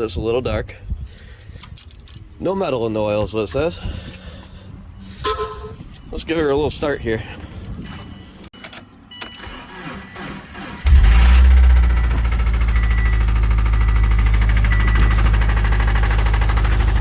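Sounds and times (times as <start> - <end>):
car engine starting and running: 9.2 - 17.0.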